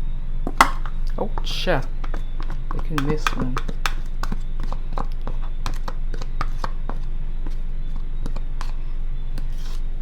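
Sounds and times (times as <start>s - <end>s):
steady low hum: 0.0s - 10.0s
containers and utensil clicking: 2.0s - 7.0s.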